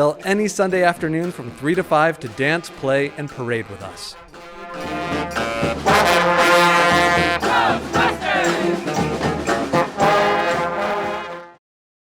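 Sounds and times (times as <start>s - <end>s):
brass street band playing: 0.0s - 11.6s.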